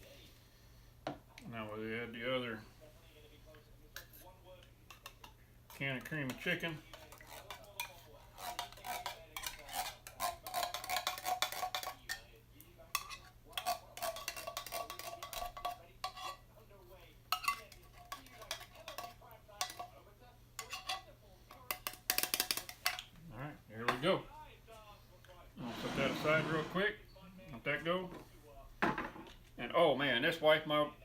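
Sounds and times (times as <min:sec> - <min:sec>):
metal spoon scraping tin can: 0:04.9 - 0:12.2, 0:13.0 - 0:16.4, 0:25.6 - 0:26.8.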